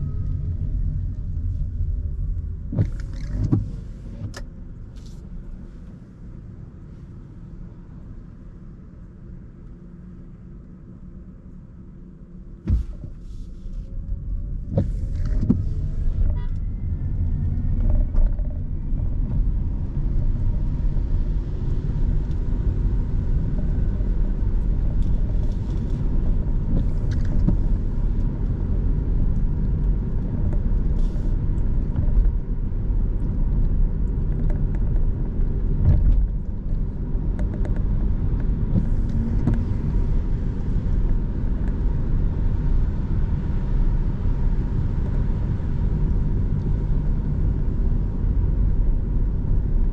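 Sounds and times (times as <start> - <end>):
engine whine: 0.0 - 4.7
car engine and road noise: 0.0 - 49.9.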